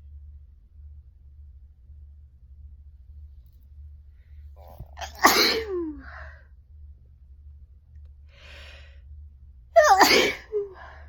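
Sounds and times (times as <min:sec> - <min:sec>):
person sneezing: 0:04.6 - 0:06.2, 0:09.8 - 0:10.8.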